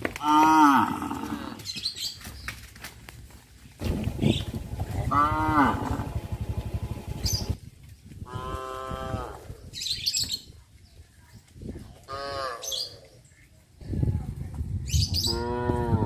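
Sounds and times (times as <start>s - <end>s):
low rumble: 3.8s - 7.7s
cattle mooing: 5.0s - 6.2s.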